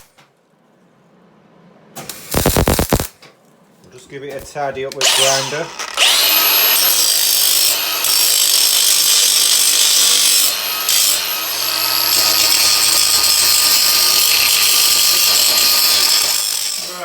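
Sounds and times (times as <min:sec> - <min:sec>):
grinder grinding steel: 0:02.1 - 0:03.1, 0:05.0 - 0:17.0.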